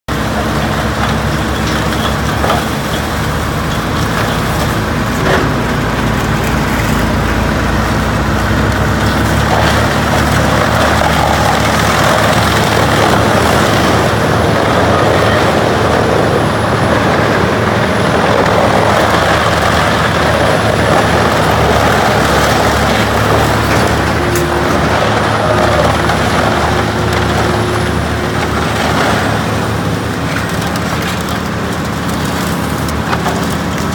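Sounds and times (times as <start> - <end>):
diesel engine drone: 0.0 - 33.9
wood being ground: 0.8 - 33.9.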